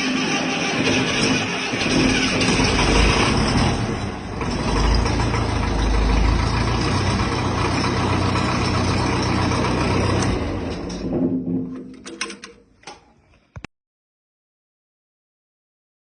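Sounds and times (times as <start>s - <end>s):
tractor engine running: 0.0s - 12.7s.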